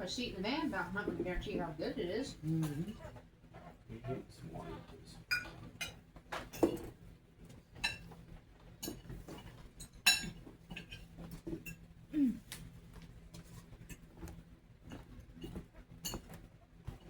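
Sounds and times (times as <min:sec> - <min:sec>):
faint murmuring: 0:00.0 - 0:05.3
cutlery and dishes clinking: 0:05.3 - 0:07.0, 0:07.8 - 0:08.2, 0:08.8 - 0:11.9, 0:14.8 - 0:17.0.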